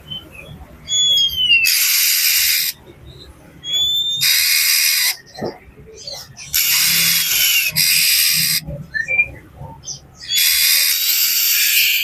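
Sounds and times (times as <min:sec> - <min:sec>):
bird harsh rasp calls: 0:00.9 - 0:02.8, 0:03.6 - 0:08.7, 0:09.8 - 0:12.0.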